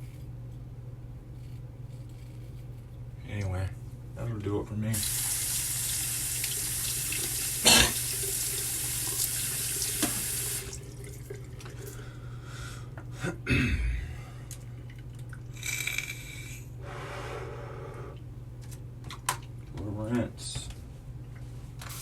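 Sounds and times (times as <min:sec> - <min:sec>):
sink tap running: 0:05.0 - 0:11.4.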